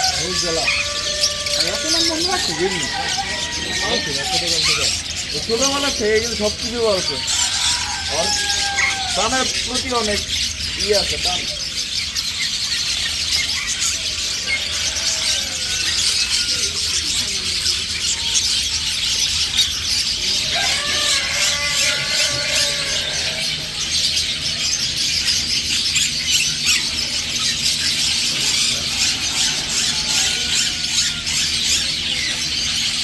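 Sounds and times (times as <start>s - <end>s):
small birds chirping and squealing: 0.0s - 33.0s.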